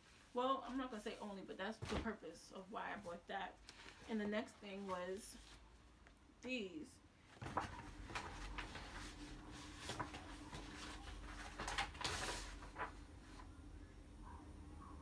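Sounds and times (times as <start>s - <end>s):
faint steady hum: 0.0s - 15.0s
packaging rustling and crinkling: 7.4s - 13.4s.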